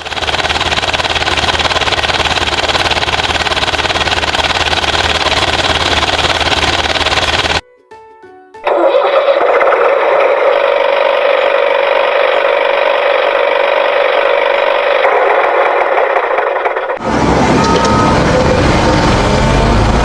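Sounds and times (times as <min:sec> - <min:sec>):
buzzing toy engine drone: 0:00.0 - 0:07.6, 0:08.8 - 0:20.0
toy beeping tune: 0:17.4 - 0:18.6.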